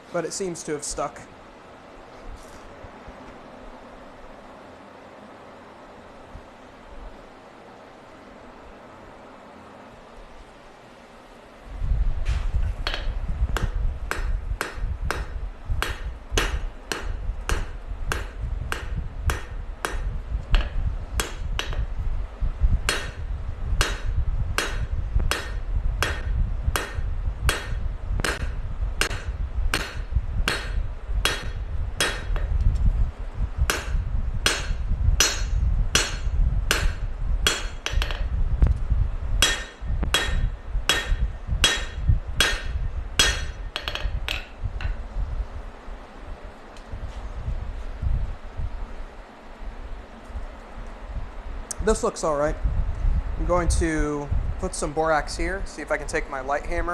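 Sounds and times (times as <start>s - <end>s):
hammer striking steel on anvil: 12.8s - 21.9s, 22.9s - 23.2s, 23.8s - 32.5s, 33.7s - 38.3s, 39.4s - 45.0s.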